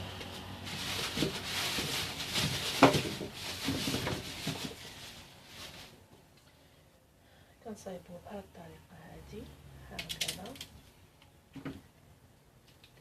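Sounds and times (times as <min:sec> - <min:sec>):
plastic bag rustling: 0:00.0 - 0:06.2.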